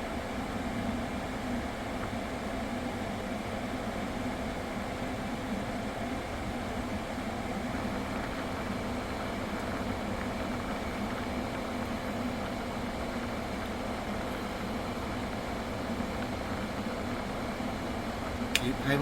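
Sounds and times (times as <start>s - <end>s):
cooling fan hum: 0.0s - 19.0s.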